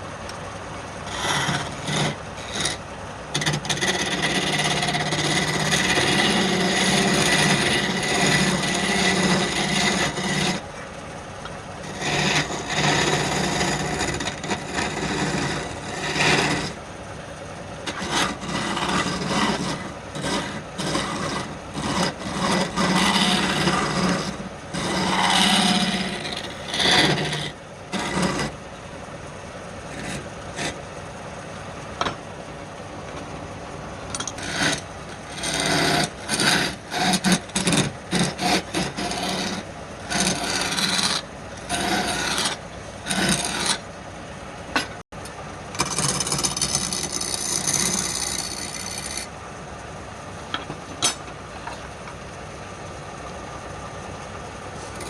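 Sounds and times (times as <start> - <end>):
faint steady hum: 0.0 - 55.0
abrasive tool scraping wood: 1.0 - 10.7, 11.8 - 16.9, 17.8 - 28.6, 29.9 - 30.9, 34.1 - 43.9, 45.8 - 49.3, 54.8 - 55.0.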